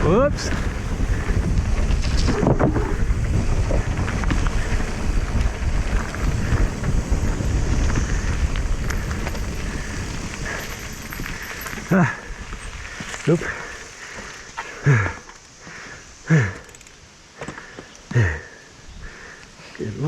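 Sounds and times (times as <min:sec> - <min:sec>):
wind buffeting microphone: 0:00.0 - 0:14.5
bike tyres rumbling on dirt: 0:00.0 - 0:16.8
bike clicks and rattles: 0:00.4 - 0:18.2.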